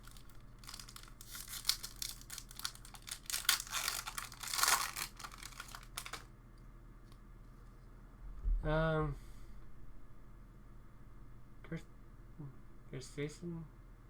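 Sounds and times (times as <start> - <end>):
foil wrapper tearing and crinkling: 0.0 - 6.3.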